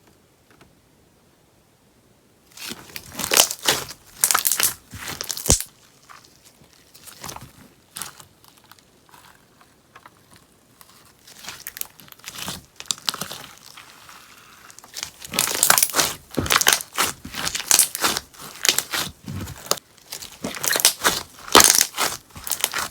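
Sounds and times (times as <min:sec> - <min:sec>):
slime popping and crackling: 0:02.6 - 0:08.8, 0:11.2 - 0:22.9.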